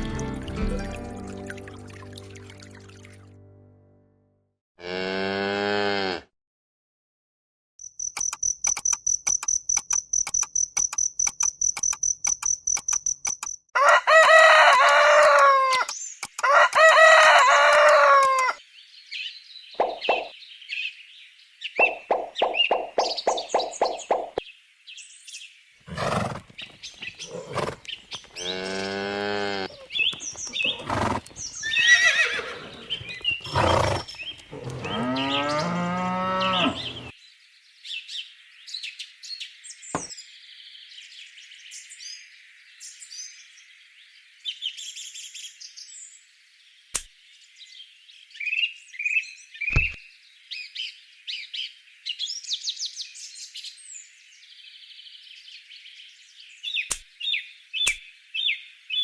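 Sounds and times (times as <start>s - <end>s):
cattle mooing: 4.8s - 6.3s, 28.4s - 29.7s, 34.5s - 37.1s
sharp clicks: 7.8s - 18.5s
birds chirping: 19.7s - 20.9s, 21.7s - 24.4s, 25.9s - 37.1s.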